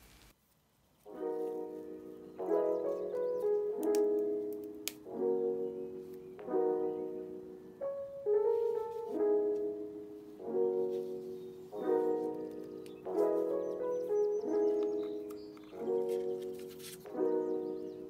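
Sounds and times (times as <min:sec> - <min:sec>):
soft piano chords: 0:01.0 - 0:18.0.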